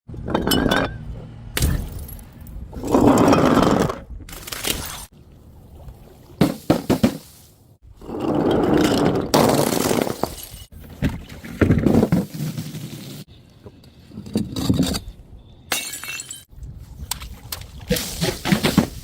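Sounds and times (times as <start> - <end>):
glass bottles smashing: 9.5 - 10.7, 15.7 - 16.5.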